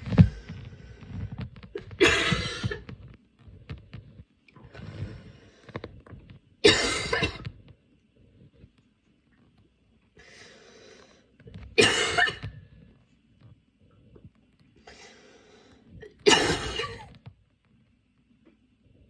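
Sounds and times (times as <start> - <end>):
noisy breath: 0.0 - 1.5, 4.6 - 6.1, 10.2 - 11.6, 14.8 - 16.0
woman coughing: 2.0 - 2.8, 6.6 - 7.4, 11.8 - 12.5, 16.2 - 17.1.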